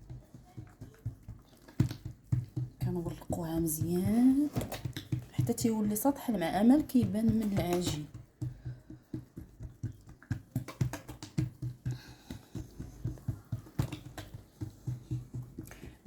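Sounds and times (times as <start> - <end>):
hands slapping dough: 0.0 - 16.0.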